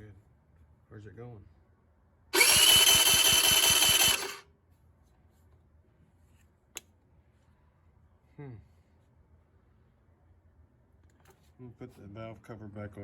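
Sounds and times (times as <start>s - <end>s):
electric starter cranking engine: 2.4s - 4.4s.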